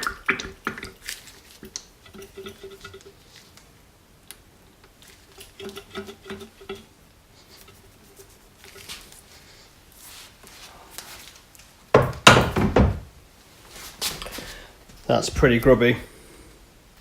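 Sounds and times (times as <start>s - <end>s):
oil dripping into container: 0.0s - 8.0s
loud knock: 12.0s - 13.1s.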